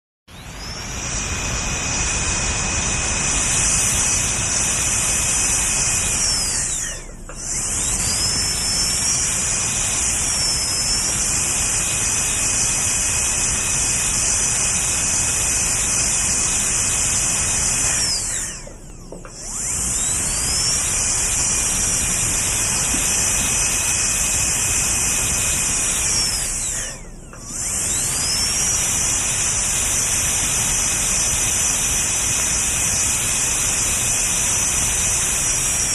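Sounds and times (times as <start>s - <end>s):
dental drill whining: 0.3s - 35.9s.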